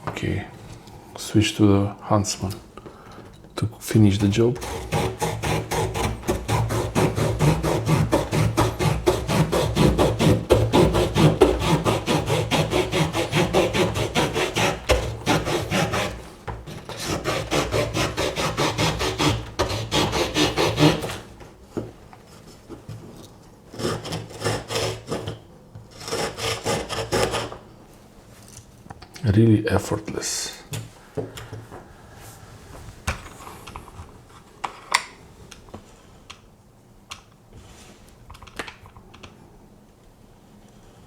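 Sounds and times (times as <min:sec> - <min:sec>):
small saw cutting branch: 0:04.1 - 0:21.2.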